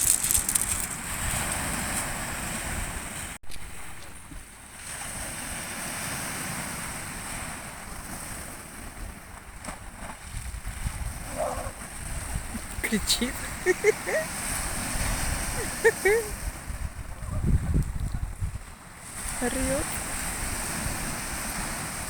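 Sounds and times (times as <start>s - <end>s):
waves washing onto shore: 0.0s - 17.2s, 17.9s - 22.0s
wind buffeting microphone: 7.8s - 22.0s.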